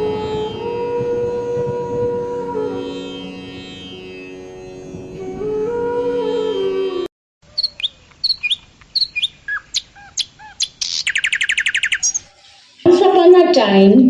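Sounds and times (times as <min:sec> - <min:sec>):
instrumental music: 0:00.0 - 0:07.1
birds chirping: 0:07.4 - 0:13.4.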